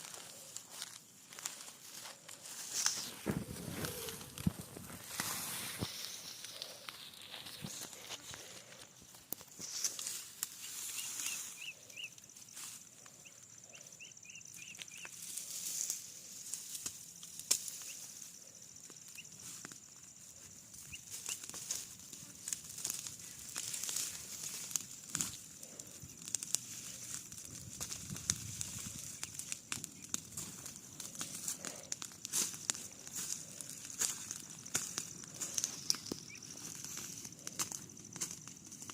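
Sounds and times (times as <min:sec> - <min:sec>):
rustles and clicks: 0:00.0 - 0:11.8
steady high hiss: 0:00.0 - 0:13.0.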